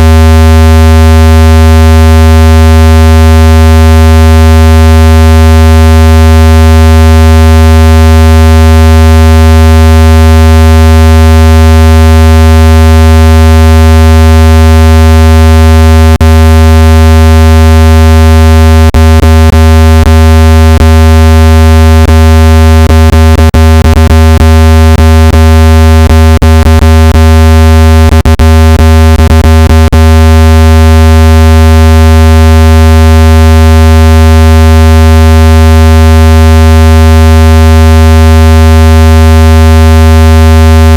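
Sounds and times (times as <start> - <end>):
low buzzing test tone: 12.6 - 31.5.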